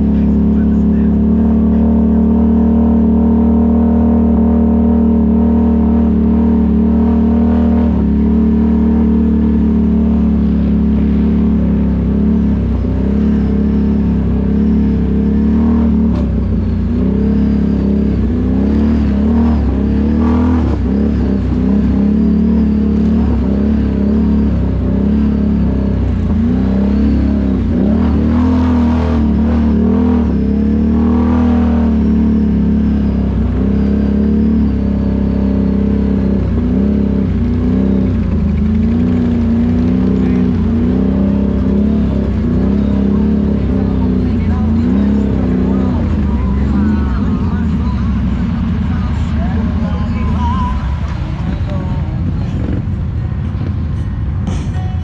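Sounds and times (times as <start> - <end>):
atv engine revving under load: 0.0 - 53.6.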